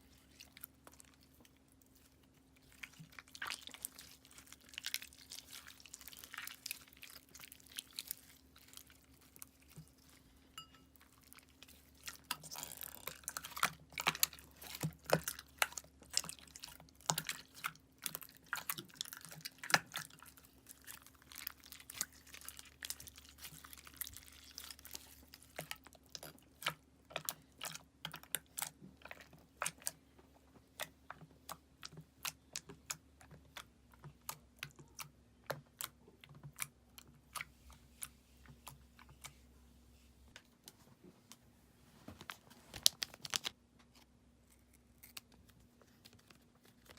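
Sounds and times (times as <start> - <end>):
slime squishing and popping: 2.6 - 10.1.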